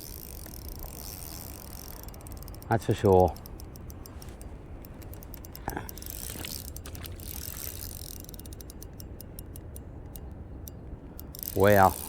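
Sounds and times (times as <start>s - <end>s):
fishing reel drag clicking: 0.0s - 12.0s.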